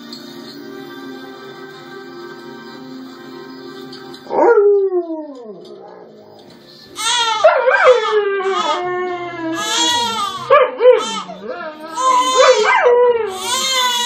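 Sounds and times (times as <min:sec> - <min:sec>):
dog howling: 0:04.3 - 0:06.3, 0:07.0 - 0:11.4, 0:12.0 - 0:14.0.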